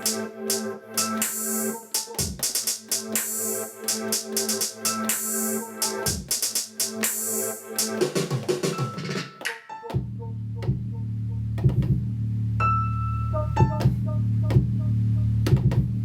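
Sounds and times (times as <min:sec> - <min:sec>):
keyboard chords: 0:00.0 - 0:10.3, 0:12.6 - 0:15.2
electronic beat: 0:00.0 - 0:10.9, 0:13.4 - 0:14.9
low bass note: 0:10.0 - 0:16.0.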